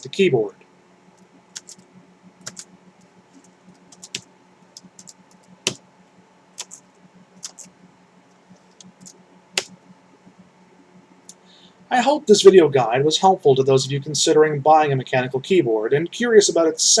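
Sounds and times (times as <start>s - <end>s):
keyboard keys clicking: 1.6s - 1.8s, 2.4s - 2.7s, 3.3s - 4.2s, 4.8s - 5.8s, 6.6s - 6.8s, 7.4s - 7.7s, 8.6s - 9.8s.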